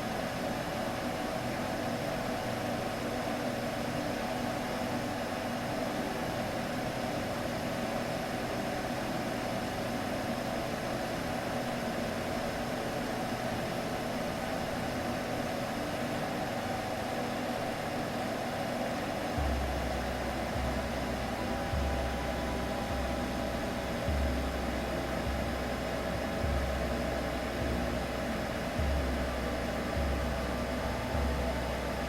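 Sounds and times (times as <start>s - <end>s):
soothing hum with hiss: 0.0s - 32.0s
low pulse: 19.2s - 32.0s.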